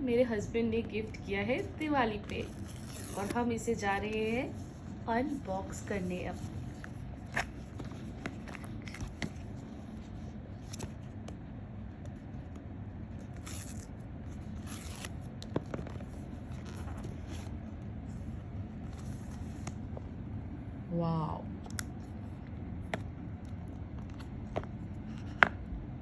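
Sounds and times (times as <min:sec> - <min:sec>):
packaging tearing and rustling: 0:13.2 - 0:17.6.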